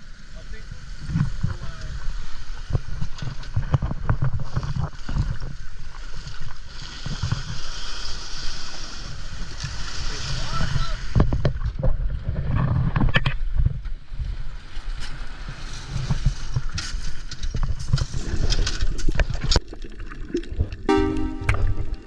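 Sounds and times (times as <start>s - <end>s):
water and boat noise: 0.0s - 22.0s
wind rumbling on microphone: 0.6s - 7.9s, 9.0s - 19.6s
music with steady melody: 20.9s - 22.0s.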